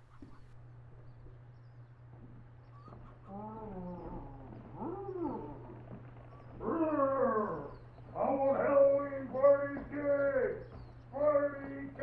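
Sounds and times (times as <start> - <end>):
animal calling: 2.7 - 12.0.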